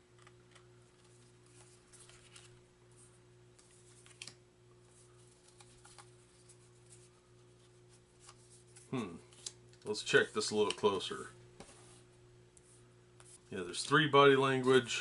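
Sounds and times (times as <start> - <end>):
low steady hum: 0.0 - 15.0
cards rustling and clicking: 0.2 - 11.8.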